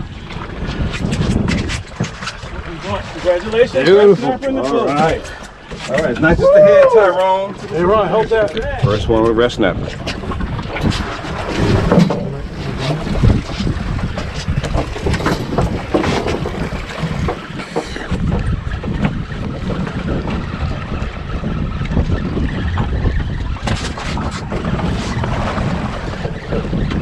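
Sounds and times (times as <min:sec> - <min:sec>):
wind buffeting microphone: 0:00.0 - 0:27.0
knocks from boat: 0:08.4 - 0:20.4.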